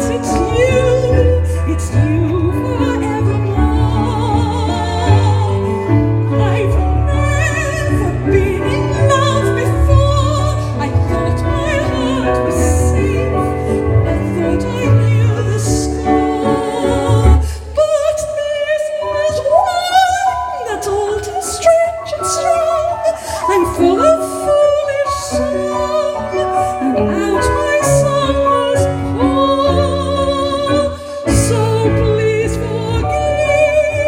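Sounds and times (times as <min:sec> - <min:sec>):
instrumental accompaniment with bass: 0:00.0 - 0:17.8
person singing with vibrato: 0:00.0 - 0:34.0.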